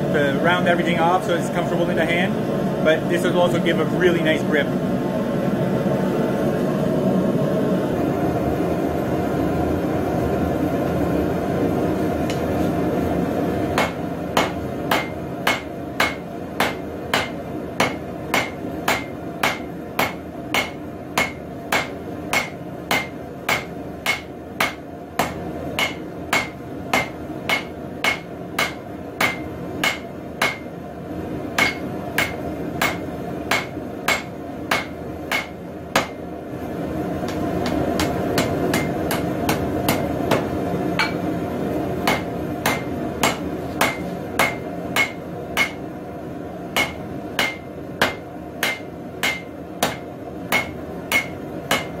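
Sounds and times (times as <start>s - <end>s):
hammer striking steel on anvil: 13.8s - 30.7s, 31.6s - 36.2s, 37.3s - 41.3s, 42.0s - 45.8s, 46.8s - 52.0s.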